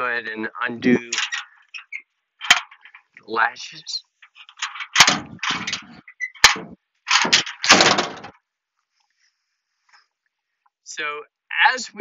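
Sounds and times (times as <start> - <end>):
latch clicks: 2.4 - 3.0, 4.4 - 8.3
metal tailgate clanking and rattling: 2.4 - 3.0, 4.5 - 8.4.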